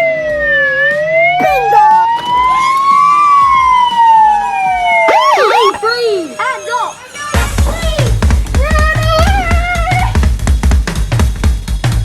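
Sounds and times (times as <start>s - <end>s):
quick chirping siren glides: 1.4s - 10.1s
police siren wailing: 1.4s - 10.2s.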